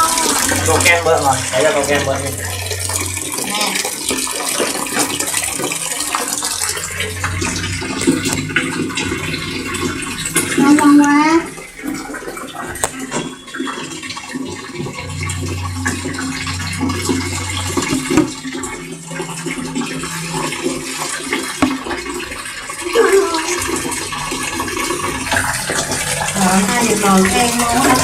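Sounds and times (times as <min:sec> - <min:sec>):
low hum: 0:00.0 - 0:28.0
water splashing and running: 0:00.0 - 0:28.0.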